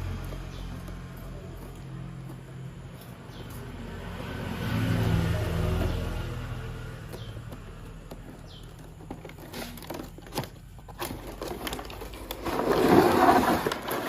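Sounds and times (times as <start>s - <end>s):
packaging rustling: 8.7s - 14.0s.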